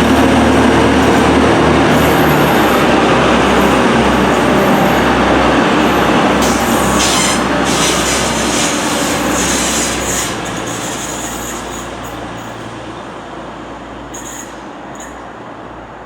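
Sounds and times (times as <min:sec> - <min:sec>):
diesel train passing: 0:00.0 - 0:16.0
high-pitched wheel squeal: 0:05.8 - 0:11.9, 0:14.1 - 0:15.2.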